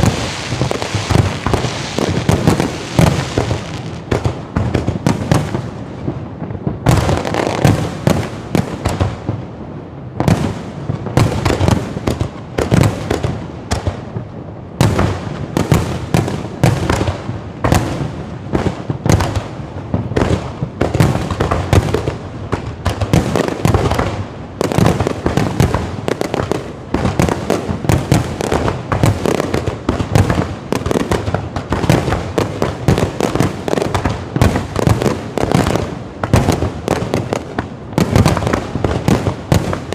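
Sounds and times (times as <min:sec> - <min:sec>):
fireworks crackle: 0:00.0 - 0:09.4, 0:10.1 - 0:39.9
fireworks bursting: 0:00.0 - 0:39.9.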